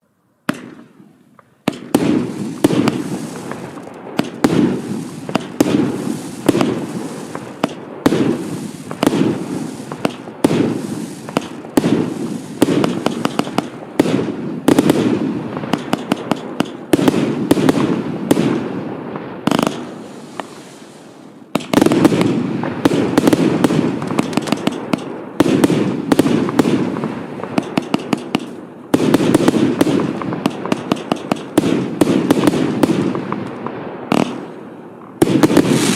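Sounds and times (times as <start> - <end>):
firework barrage bangs and cracks: 0.5 - 35.9.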